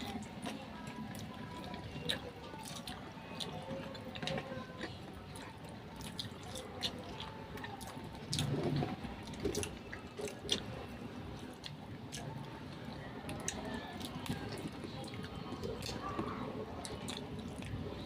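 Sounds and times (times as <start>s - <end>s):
wet chewing and smacking: 0.0s - 18.0s.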